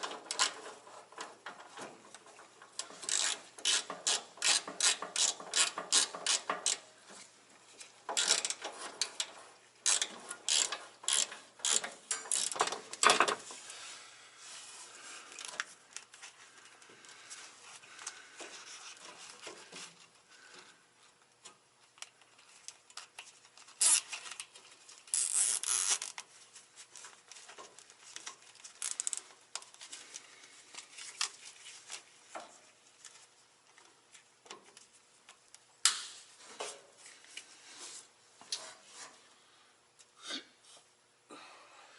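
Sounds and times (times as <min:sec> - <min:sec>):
ratchet clicking: 0:02.8 - 0:06.8, 0:08.2 - 0:12.8.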